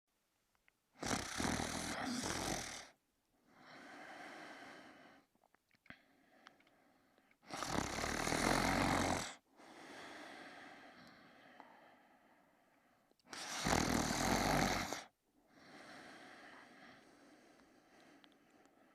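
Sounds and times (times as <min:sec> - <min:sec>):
man snoring: 0:01.0 - 0:03.0, 0:07.5 - 0:10.8, 0:13.3 - 0:17.0
quiet breath: 0:01.1 - 0:18.9.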